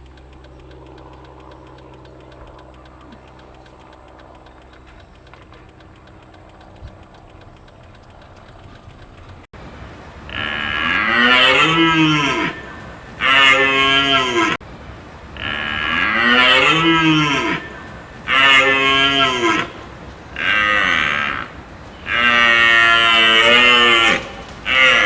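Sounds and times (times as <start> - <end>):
faint steady hum: 0.0 - 25.0
cow mooing: 10.3 - 14.6, 15.4 - 25.0.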